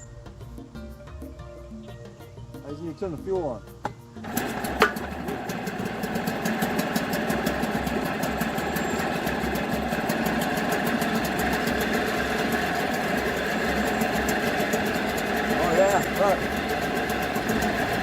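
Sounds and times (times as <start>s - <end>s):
outboard motor idling: 4.2s - 18.0s.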